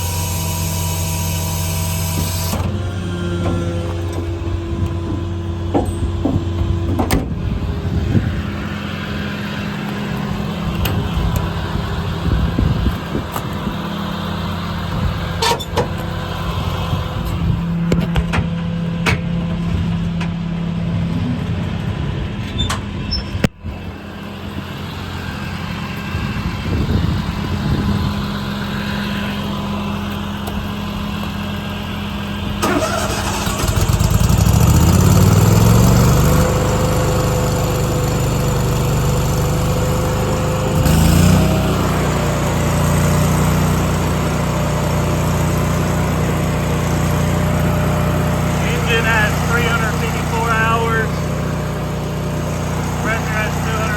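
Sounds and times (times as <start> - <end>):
engine idling: 23.6 - 53.9.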